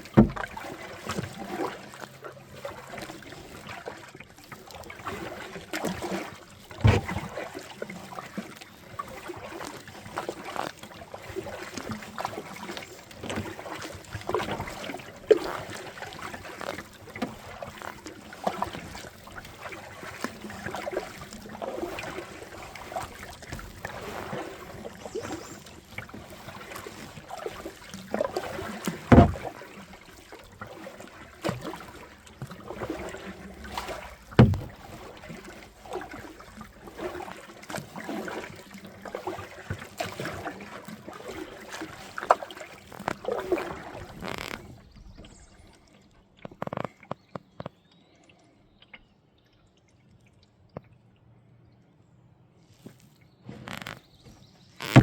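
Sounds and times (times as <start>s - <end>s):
water splashing around kayak: 0.0s - 51.0s, 52.7s - 55.0s
sharp knocks: 29.1s - 29.4s, 34.4s - 34.8s.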